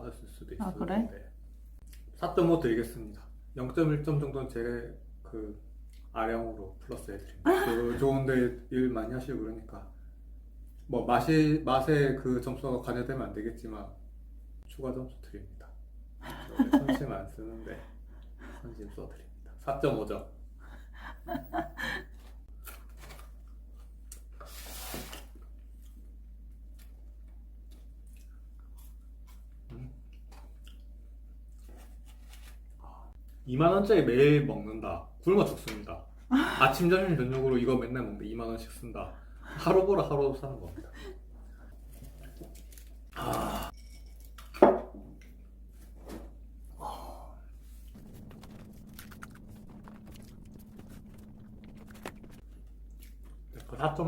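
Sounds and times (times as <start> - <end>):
person chewing: 25.4 - 32.6, 47.8 - 53.7.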